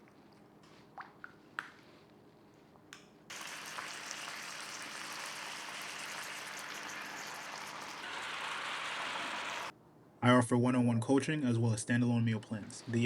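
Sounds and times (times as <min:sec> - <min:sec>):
food sizzling in a pan: 0:03.3 - 0:09.7.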